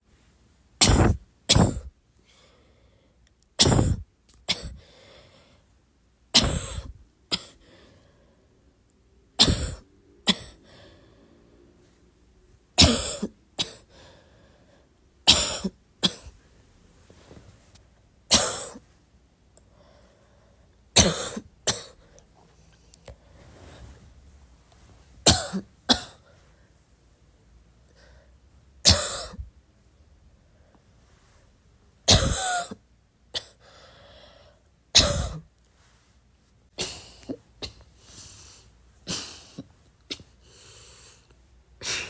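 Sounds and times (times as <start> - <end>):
person coughing: 0.8 - 1.9, 3.6 - 4.8, 6.4 - 7.6, 9.4 - 10.6, 12.8 - 13.9, 15.3 - 16.4, 18.3 - 18.8, 21.0 - 22.0, 25.2 - 26.2, 28.9 - 29.5, 32.1 - 32.8, 35.0 - 35.5, 36.8 - 37.9, 39.0 - 40.4.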